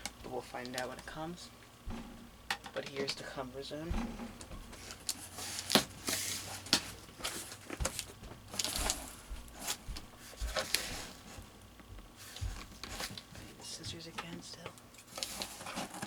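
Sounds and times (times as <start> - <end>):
cardboard scraping and rustling: 3.9 - 11.5, 15.1 - 16.0.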